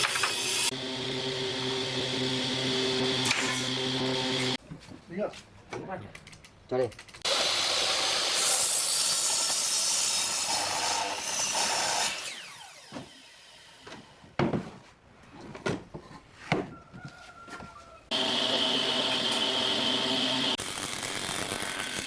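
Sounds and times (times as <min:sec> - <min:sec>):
electric power tool whining: 0:00.0 - 0:04.6, 0:18.1 - 0:22.0.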